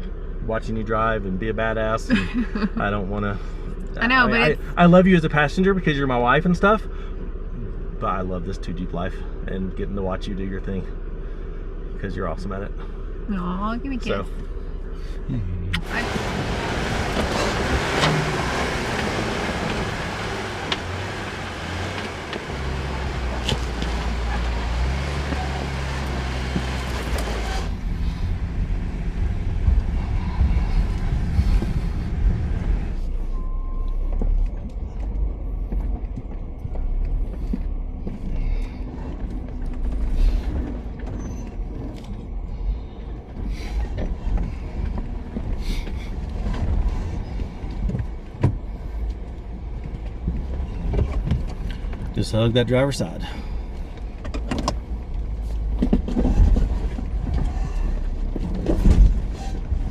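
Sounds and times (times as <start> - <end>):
off-road vehicle engine: 0.0 - 59.9.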